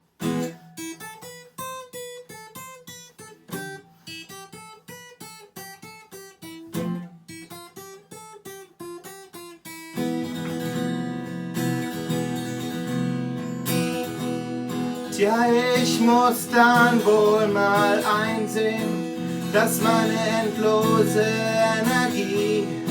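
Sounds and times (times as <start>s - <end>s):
acoustic guitar picking and strumming: 0.0s - 22.9s.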